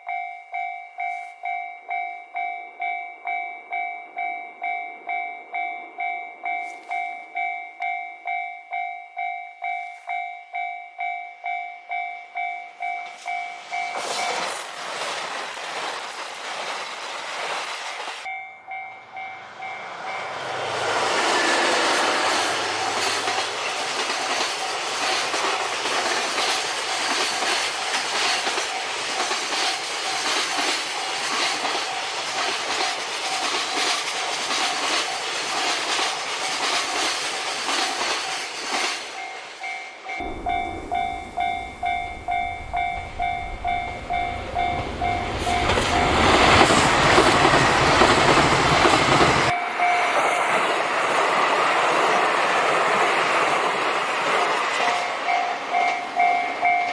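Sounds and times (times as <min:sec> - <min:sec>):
crossing warning bell: 0:00.0 - 0:56.9
train wheels clattering: 0:12.4 - 0:18.3, 0:19.4 - 0:56.9
loud rushing noise: 0:19.0 - 0:23.7.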